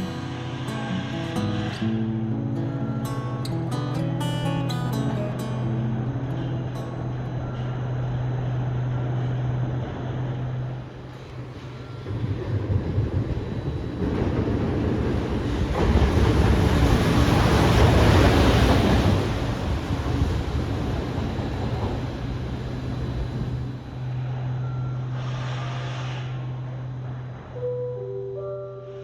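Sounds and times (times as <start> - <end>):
locomotive wheels rumbling on rails: 0.0 - 27.7.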